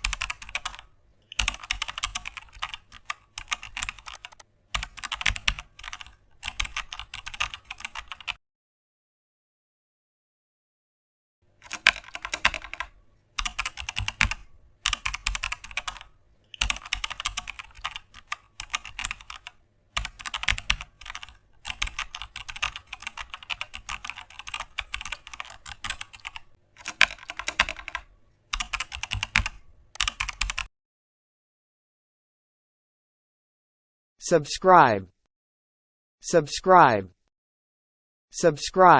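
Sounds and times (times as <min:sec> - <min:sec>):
keyboard typing: 0:00.0 - 0:08.4, 0:11.5 - 0:30.7.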